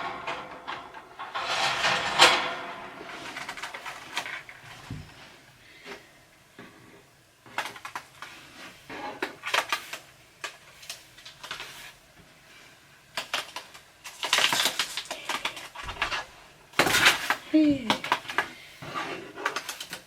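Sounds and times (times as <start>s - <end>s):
birdcage rattling and clattering: 0.0s - 5.2s.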